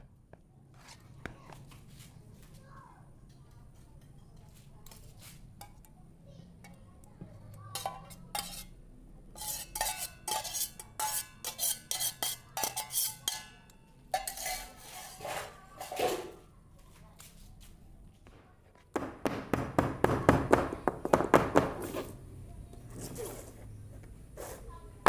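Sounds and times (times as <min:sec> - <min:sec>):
utensil clinking on a dish: 0:03.2 - 0:06.0, 0:06.6 - 0:16.4.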